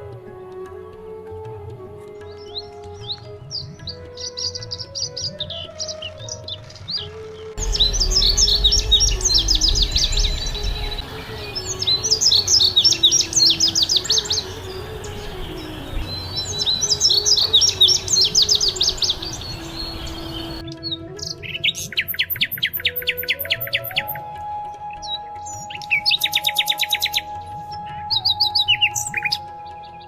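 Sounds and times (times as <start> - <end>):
small birds chirping: 7.6 - 20.6.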